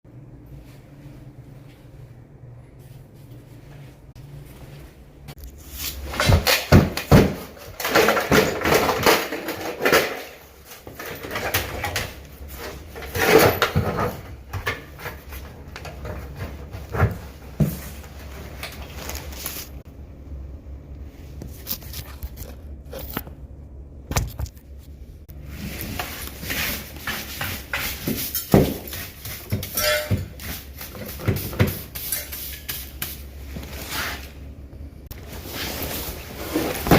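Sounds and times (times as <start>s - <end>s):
parts knocking and clattering: 6.1s - 18.0s.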